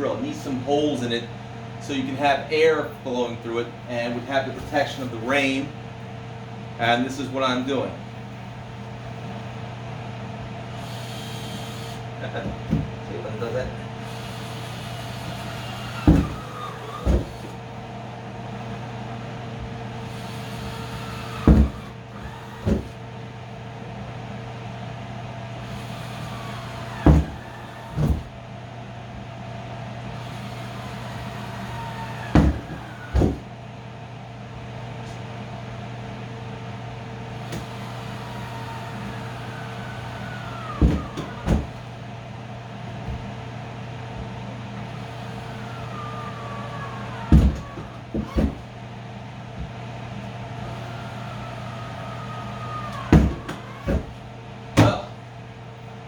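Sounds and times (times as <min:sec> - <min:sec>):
cordless drill bursts: 0:10.7 - 0:12.1, 0:14.0 - 0:17.5, 0:20.0 - 0:22.8.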